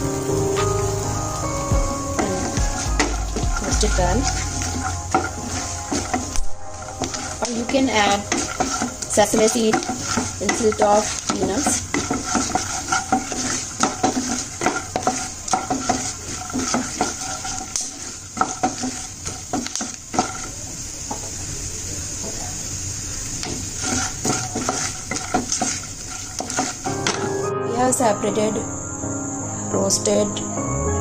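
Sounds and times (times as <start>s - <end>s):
hot pan hissing: 0.0s - 31.0s
seeds rattling: 2.0s - 20.5s
spatula scraping in a pan: 2.1s - 20.6s, 23.4s - 27.0s.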